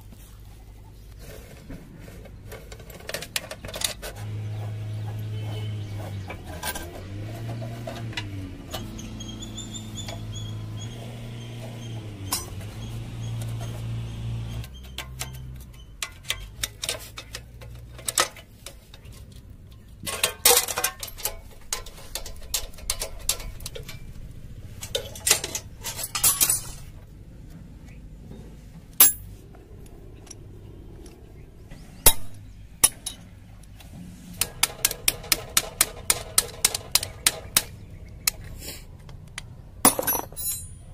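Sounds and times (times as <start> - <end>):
metal tools clinking: 12.3 - 12.8, 14.7 - 27.0, 29.0 - 29.4, 32.0 - 33.4, 39.8 - 40.9.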